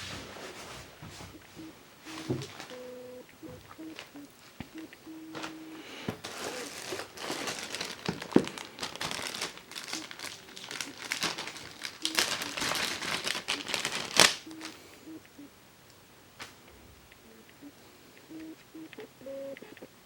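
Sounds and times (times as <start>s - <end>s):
packaging crinkling and rustling: 2.1s - 2.8s, 5.3s - 14.8s
packaging crackles: 2.2s - 2.8s, 5.3s - 15.0s.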